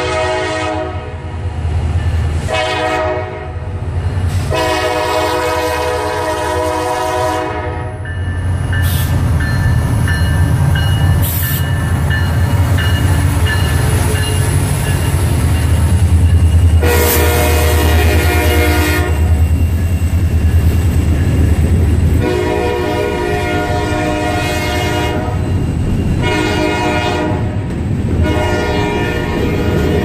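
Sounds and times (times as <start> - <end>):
train horn blasts: 0.0 - 1.3, 2.4 - 8.0, 16.8 - 19.4, 22.2 - 25.4, 26.2 - 27.6, 28.2 - 30.0
train rumbling past: 0.0 - 30.0.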